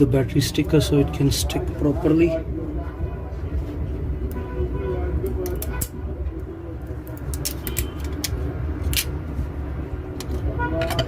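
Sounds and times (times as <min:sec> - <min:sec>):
small clicks of phone parts: 0:07.3 - 0:09.1.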